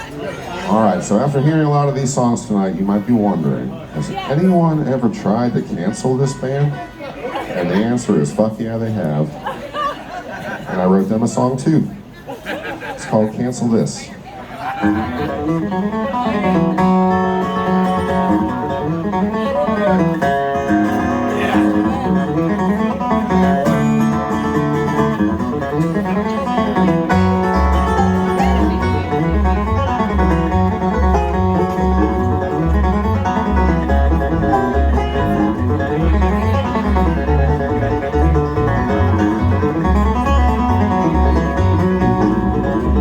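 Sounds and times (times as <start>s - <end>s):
picked banjo: 0.0s - 11.2s, 14.5s - 43.0s
acoustic guitar: 14.6s - 43.0s
low bass notes: 14.9s - 43.0s.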